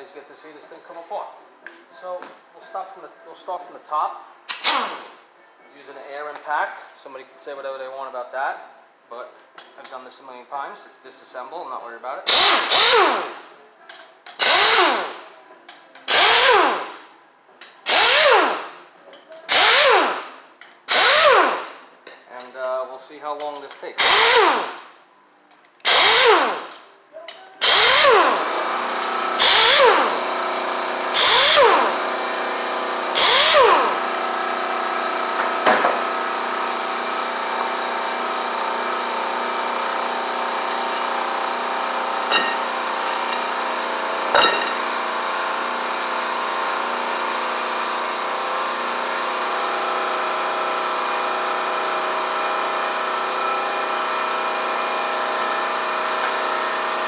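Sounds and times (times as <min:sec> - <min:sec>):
air impact wrench bursts: 0:04.5 - 0:05.2, 0:12.3 - 0:13.5, 0:14.3 - 0:15.3, 0:16.1 - 0:17.1, 0:17.8 - 0:18.9, 0:19.5 - 0:21.9, 0:24.0 - 0:25.0, 0:25.8 - 0:26.9, 0:27.6 - 0:57.0.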